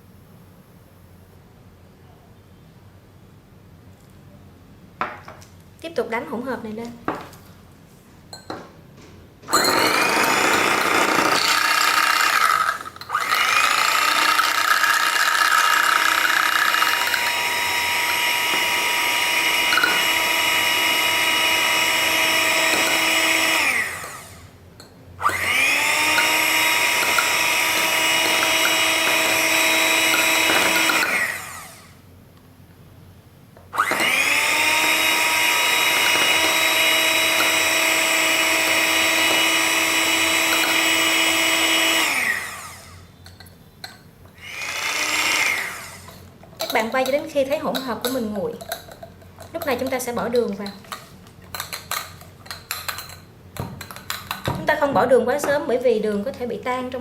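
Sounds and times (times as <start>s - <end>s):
electric hand mixer whining: 9.5s - 24.5s, 25.2s - 32.0s, 33.8s - 43.0s, 44.4s - 46.2s.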